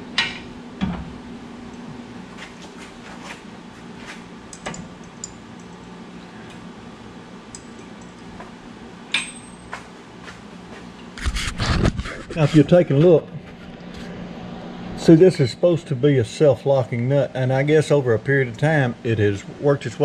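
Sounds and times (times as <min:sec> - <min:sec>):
faint steady hum: 0:00.0 - 0:20.0
sharp ringing metal clink: 0:09.1 - 0:09.7.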